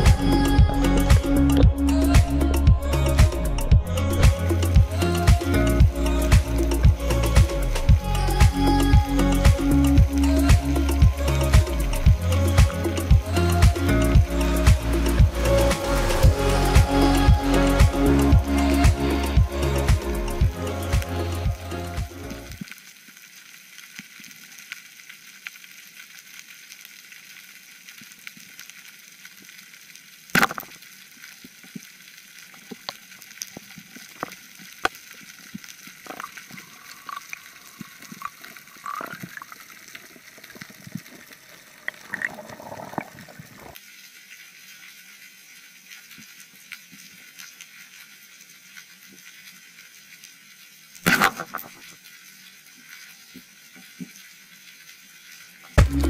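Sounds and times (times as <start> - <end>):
underwater crackling hiss: 0.0 - 56.0.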